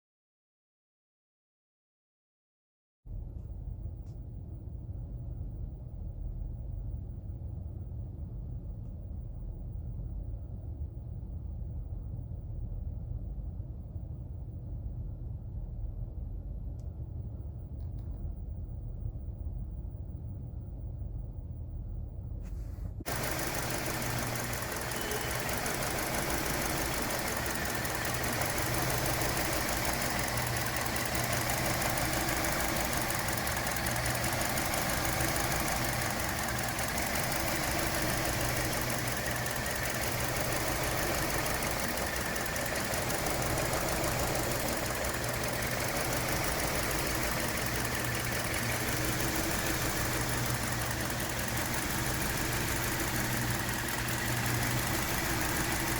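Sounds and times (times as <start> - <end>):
car engine idling with misfire: 22.6 - 55.9.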